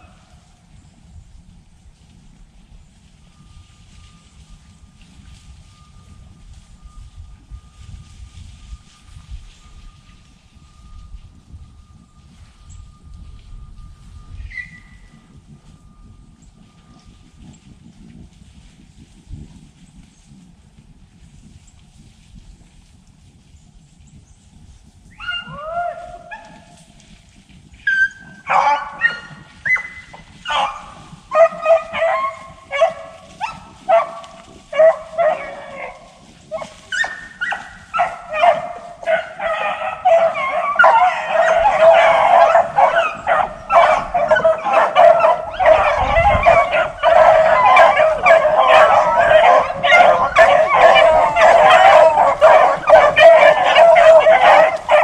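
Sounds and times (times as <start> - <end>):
pack of dogs baying: 27.9 - 55.0.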